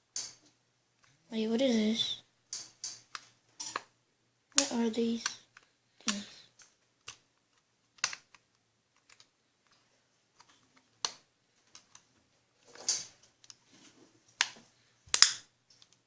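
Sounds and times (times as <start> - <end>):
toy parts clicking: 4.5 - 9.3, 14.4 - 16.0.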